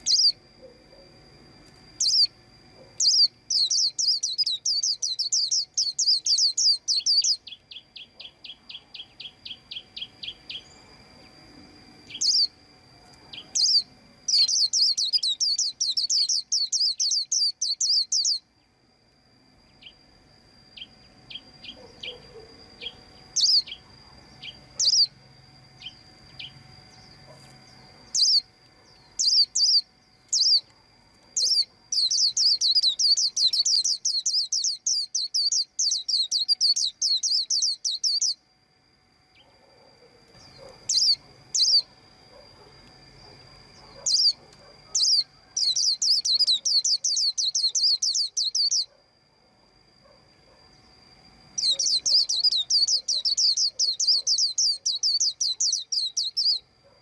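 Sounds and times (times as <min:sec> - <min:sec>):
bird chirping rapidly: 0:00.0 - 0:00.4, 0:02.0 - 0:02.3, 0:03.0 - 0:10.8, 0:12.1 - 0:12.6, 0:13.3 - 0:18.4, 0:20.8 - 0:23.8, 0:24.4 - 0:25.2, 0:27.8 - 0:30.7, 0:31.4 - 0:38.4, 0:40.4 - 0:41.9, 0:43.8 - 0:48.9, 0:51.6 - 0:56.7.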